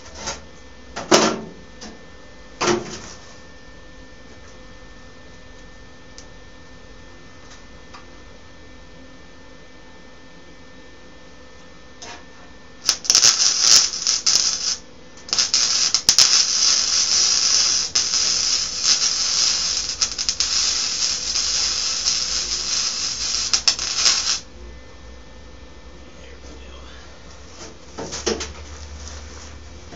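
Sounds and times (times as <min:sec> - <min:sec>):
arc welding crackling and hissing: 0:12.8 - 0:25.0, 0:26.2 - 0:29.9.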